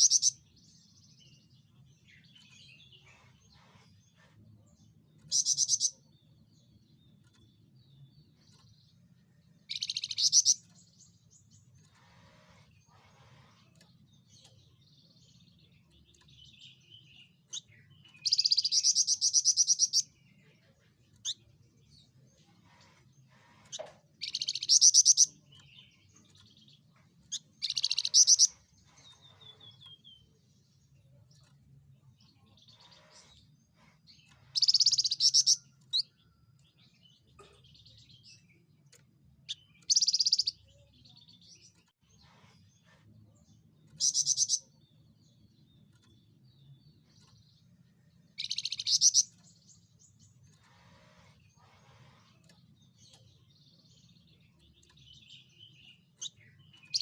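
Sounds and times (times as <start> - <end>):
bird singing trilled bursts: 0.0 - 0.4, 5.3 - 6.0, 9.7 - 10.7, 27.3 - 28.6, 34.5 - 36.1, 43.9 - 44.8, 48.2 - 49.5.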